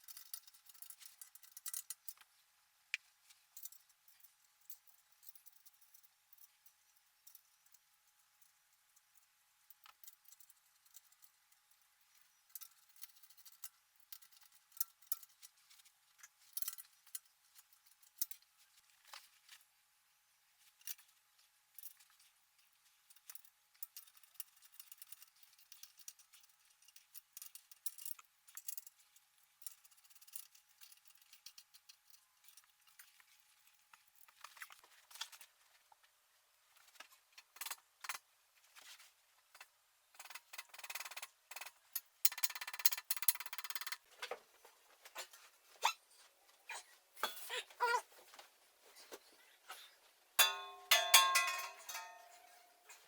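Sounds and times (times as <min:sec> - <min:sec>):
metal parts and tools clinking: 0:00.0 - 0:02.2, 0:12.0 - 0:19.6, 0:21.7 - 0:35.5, 0:38.8 - 0:44.0, 0:50.4 - 0:53.0
faint steady tone: 0:49.4 - 0:53.0.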